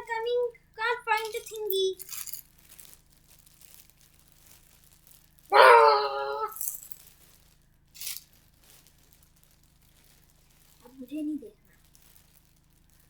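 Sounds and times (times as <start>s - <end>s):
child calling out: 5.5s - 6.6s.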